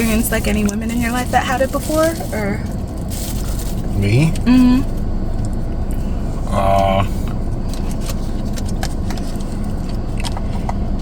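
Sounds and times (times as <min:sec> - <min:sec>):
car cabin rumble: 0:00.0 - 0:11.0
food packaging clicks and crackles: 0:07.7 - 0:10.9.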